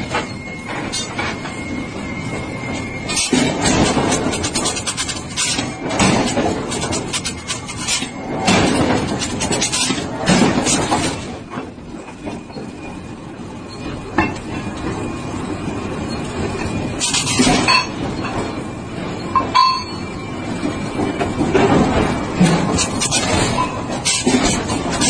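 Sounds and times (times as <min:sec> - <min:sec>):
metallic clinks and clanks: 0:19.3 - 0:20.1.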